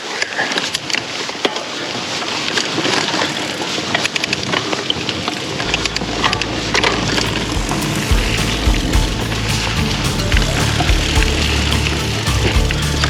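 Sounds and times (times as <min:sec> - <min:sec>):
bike tyres on dirt and rocks: 0:00.0 - 0:13.0
low background music: 0:05.7 - 0:13.0.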